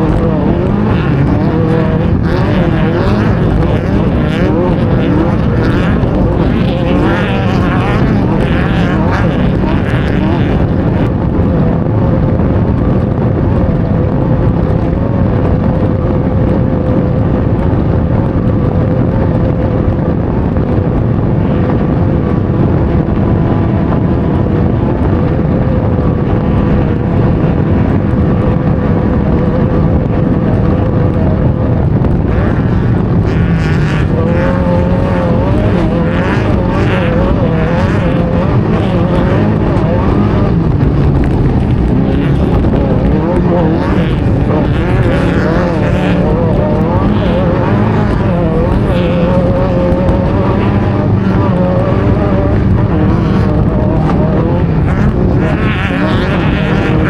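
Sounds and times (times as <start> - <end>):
race car engine running hard: 0.0 - 57.0
road and wind noise: 0.0 - 57.0.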